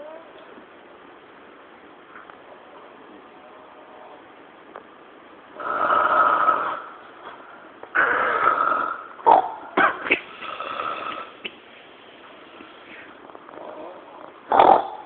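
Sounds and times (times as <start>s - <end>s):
person snoring: 5.6s - 6.9s, 8.0s - 9.1s, 10.4s - 11.4s.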